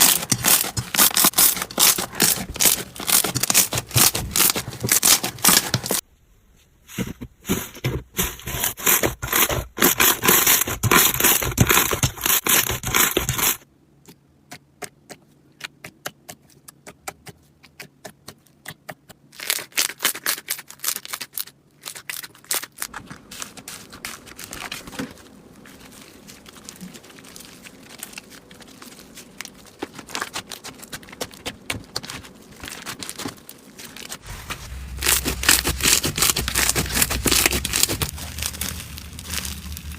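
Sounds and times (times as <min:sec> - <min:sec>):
slime crackling and popping: 0:00.0 - 0:06.0, 0:19.4 - 0:39.9.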